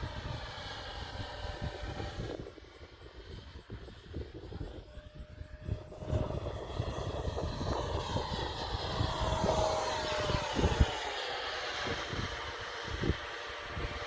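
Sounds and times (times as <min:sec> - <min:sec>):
model jet fan whine passing: 0:00.0 - 0:14.0
wind buffeting microphone: 0:00.0 - 0:14.0.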